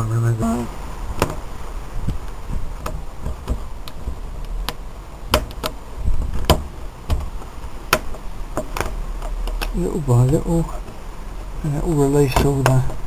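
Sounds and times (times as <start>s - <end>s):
plastic clicks and snaps: 2.8s - 10.4s.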